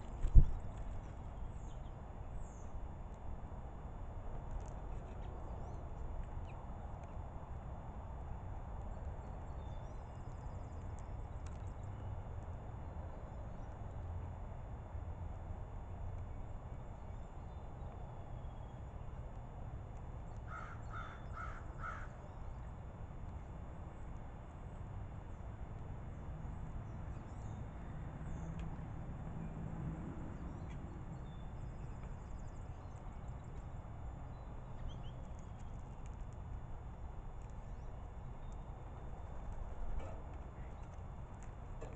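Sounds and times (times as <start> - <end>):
songbirds chirping: 0.0 - 3.3, 3.9 - 7.8, 8.7 - 14.5, 16.1 - 41.9
low background rumble: 8.5 - 41.9
small birds chirping: 30.4 - 36.5.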